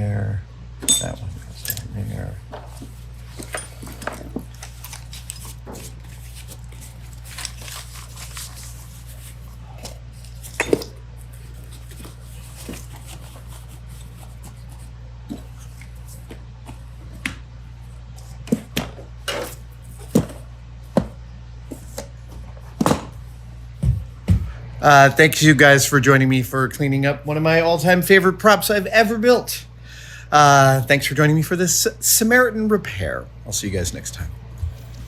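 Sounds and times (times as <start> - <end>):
steady low hum: 0.0 - 35.0
tools clinking and knocking: 0.8 - 1.9.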